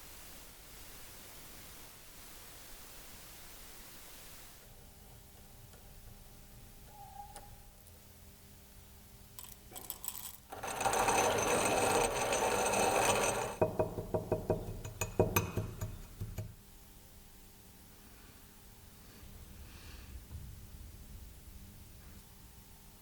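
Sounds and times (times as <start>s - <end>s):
coffee grinder grinding rattle: 9.4s - 13.6s.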